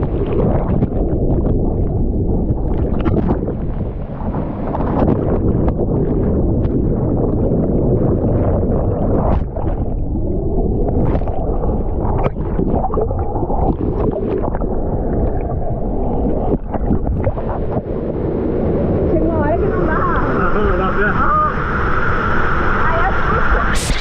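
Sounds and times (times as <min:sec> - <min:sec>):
waterfall rushing: 0:19.6 - 0:24.0.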